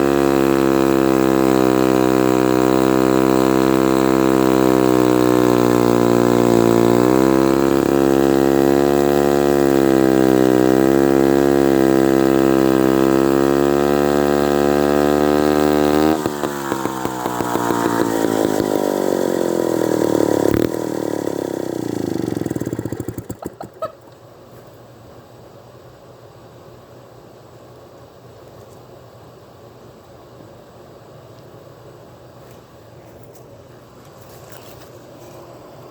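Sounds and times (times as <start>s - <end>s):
chainsaw engine running: 0.0s - 24.1s
chainsaw engine sputtering: 0.0s - 24.1s.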